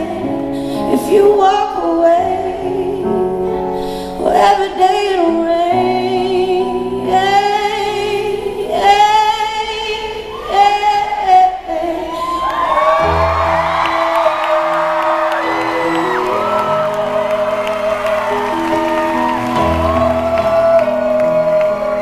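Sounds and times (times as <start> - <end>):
woman singing a slow ballad: 0.0 - 13.5, 14.2 - 22.0.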